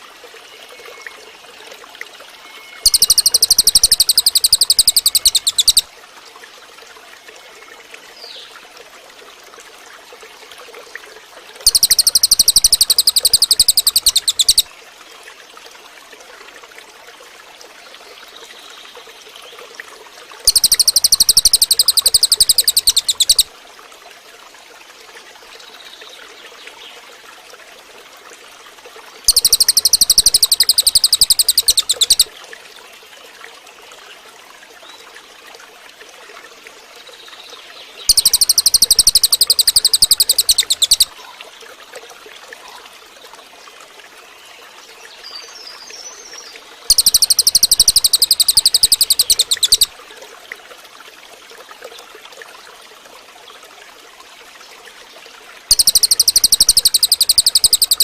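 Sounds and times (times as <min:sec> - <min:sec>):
trickle of running water: 0:00.0 - 0:58.0
bird rattling call: 0:02.8 - 0:05.9, 0:11.7 - 0:14.7, 0:20.5 - 0:23.5, 0:29.3 - 0:32.3, 0:38.1 - 0:41.1, 0:46.9 - 0:49.9, 0:55.7 - 0:58.0.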